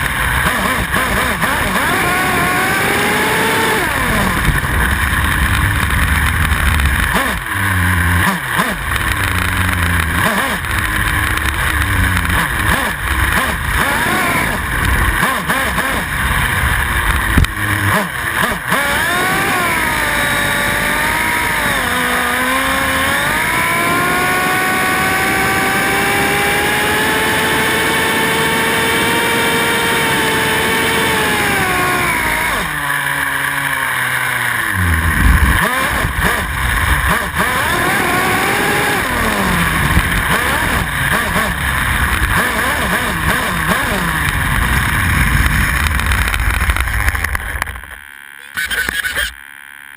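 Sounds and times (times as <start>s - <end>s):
rc car motor revving: 0.0s - 49.9s
low rumbling: 2.5s - 23.8s, 34.4s - 48.0s.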